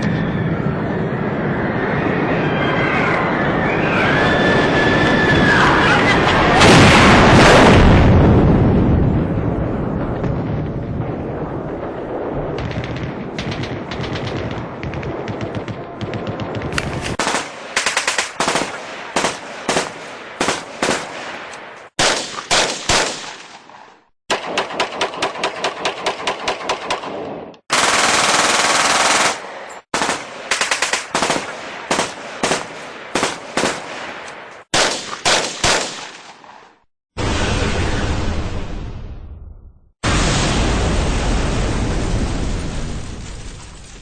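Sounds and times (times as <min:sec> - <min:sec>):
loud blast: 0:06.5 - 0:14.8, 0:40.0 - 0:43.6
machine-gun fire: 0:12.6 - 0:21.2, 0:27.7 - 0:34.0, 0:34.7 - 0:36.3
single gunshots: 0:12.6 - 0:27.2, 0:30.0 - 0:36.7.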